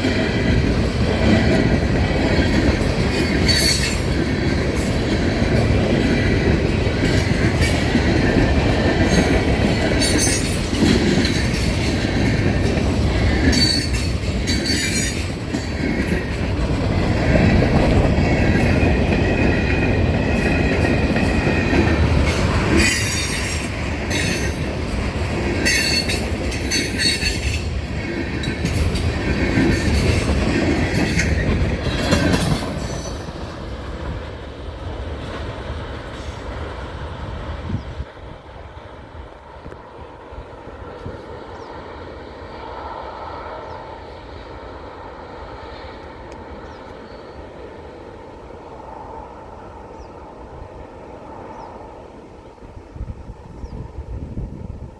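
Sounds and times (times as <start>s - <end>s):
train wheels rumbling and clattering: 0.0s - 54.9s
wheel squeal: 13.4s - 15.3s.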